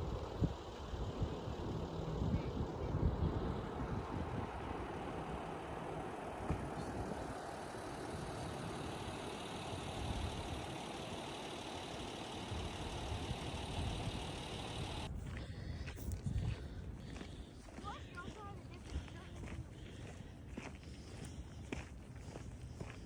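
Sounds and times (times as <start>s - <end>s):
wind buffeting microphone: 0.0s - 23.0s
ocean surf roaring: 1.7s - 15.0s.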